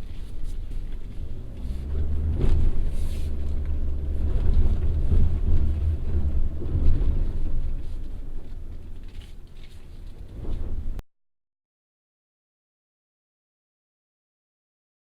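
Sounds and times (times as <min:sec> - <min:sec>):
car engine low rumble: 0:00.0 - 0:11.0.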